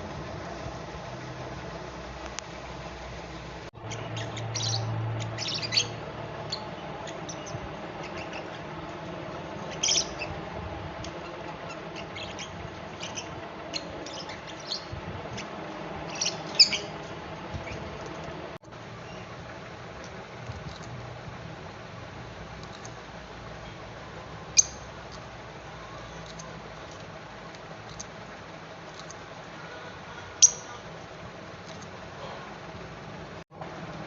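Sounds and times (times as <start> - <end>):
lovebird chirping and squawking: 3.8 - 8.7, 9.6 - 10.4, 11.0 - 17.9, 24.5 - 24.9, 30.4 - 30.8.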